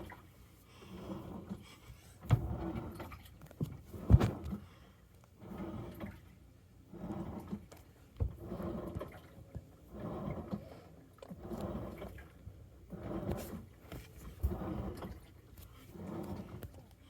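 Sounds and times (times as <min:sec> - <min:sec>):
washing machine sloshing laundry: 0:00.0 - 0:17.0.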